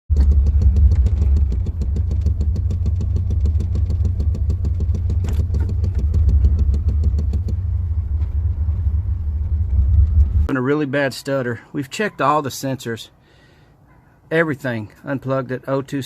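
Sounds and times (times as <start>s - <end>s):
engine idling roughly: 0.1s - 8.2s.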